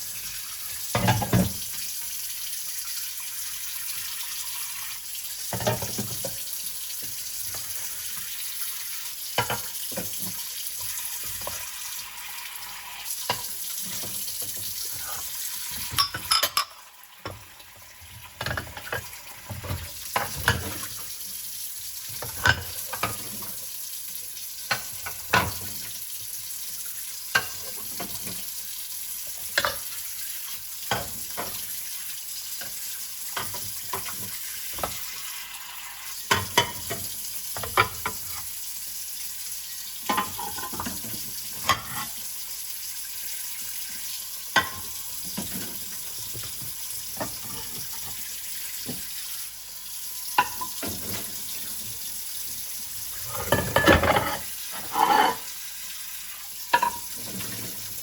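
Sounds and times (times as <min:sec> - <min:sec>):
scrubbing and running water: 0:13.2 - 0:16.4, 0:18.0 - 0:23.7, 0:32.6 - 0:35.2, 0:44.6 - 0:49.3, 0:50.4 - 0:55.6, 0:56.7 - 0:58.0
dishes and cutlery clinking: 0:13.3 - 0:16.8, 0:40.1 - 0:42.2, 0:44.6 - 0:48.2, 0:50.4 - 0:51.4, 0:53.2 - 0:55.5, 0:56.7 - 0:57.8.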